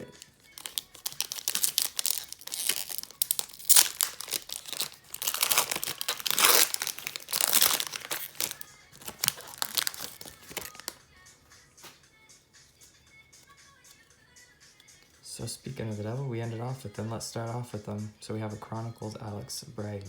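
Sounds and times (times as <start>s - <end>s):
plastic wrapper tearing and crinkling: 0.0s - 11.0s.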